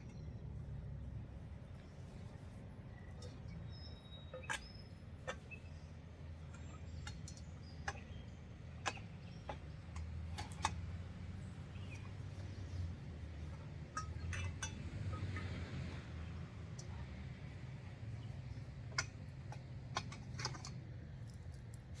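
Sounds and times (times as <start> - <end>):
metallic clinks and taps: 13.9 - 15.6.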